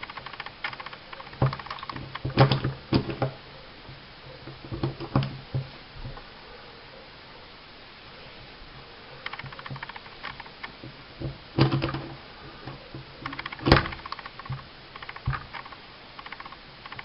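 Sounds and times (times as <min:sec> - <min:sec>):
pistol parts clicking and rattling: 0:00.0 - 0:03.3, 0:09.2 - 0:10.8, 0:11.6 - 0:17.0.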